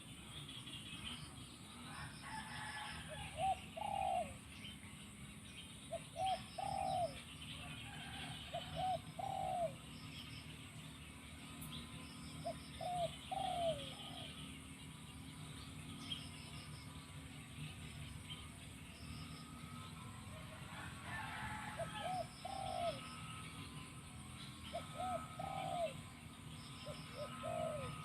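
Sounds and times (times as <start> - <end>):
dove cooing: 1.9 - 4.5, 5.9 - 10.2, 12.4 - 14.6, 19.7 - 28.0.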